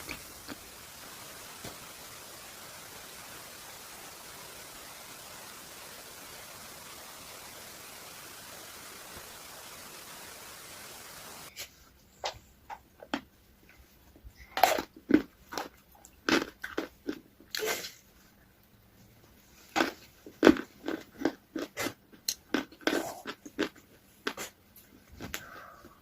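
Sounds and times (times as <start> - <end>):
steady hiss: 0.0 - 12.7
chewing: 19.6 - 24.5.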